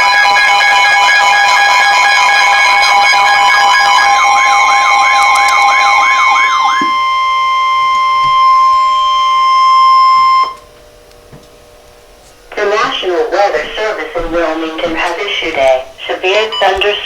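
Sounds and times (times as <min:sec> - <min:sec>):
two-tone attention signal: 0:00.0 - 0:10.8, 0:12.5 - 0:17.0
warbling siren-like tone: 0:00.0 - 0:11.0
steady warning tone: 0:00.0 - 0:17.0.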